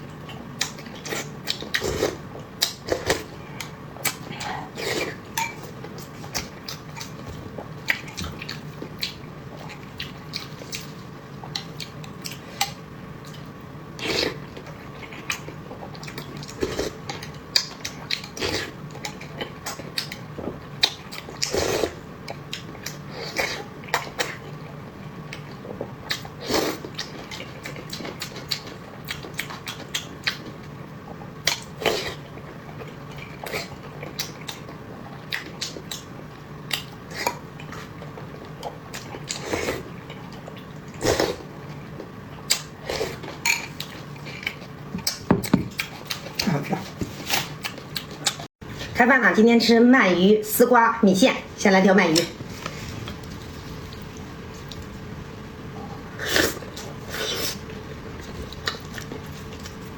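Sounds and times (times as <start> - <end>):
faint steady hum: 0.0 - 59.9
biting and chewing: 42.0 - 48.5.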